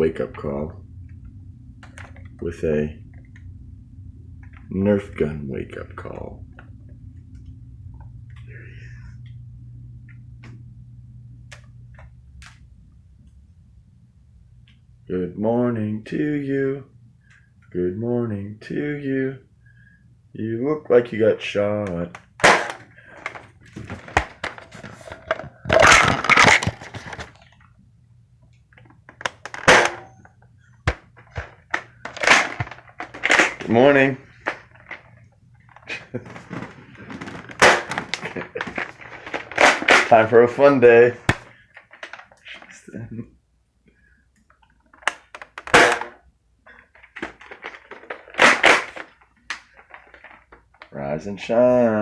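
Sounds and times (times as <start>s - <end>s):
foam darts hitting: 22.4s - 22.8s, 29.6s - 30.2s
toy blaster shots: 22.4s - 22.8s, 29.6s - 30.1s, 45.7s - 46.2s.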